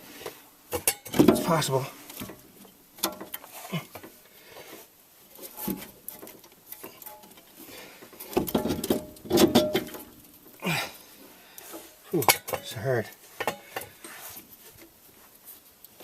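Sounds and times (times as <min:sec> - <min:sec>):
metal parts knocking and scraping: 0:00.7 - 0:02.4, 0:08.2 - 0:10.2.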